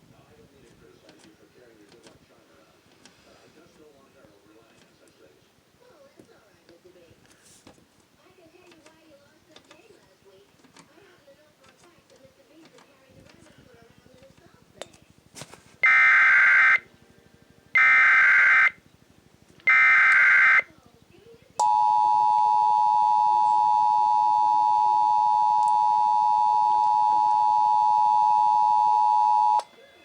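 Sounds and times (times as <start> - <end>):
two-tone attention signal: 21.6 - 29.7.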